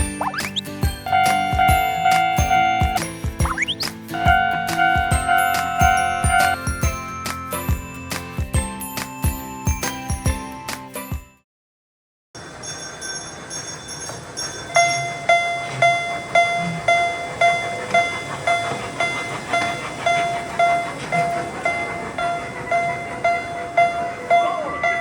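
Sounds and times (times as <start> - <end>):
railroad crossing bell ringing: 0.0 - 11.2, 12.4 - 25.0
high-pitched ringing: 0.2 - 8.3, 12.4 - 19.2.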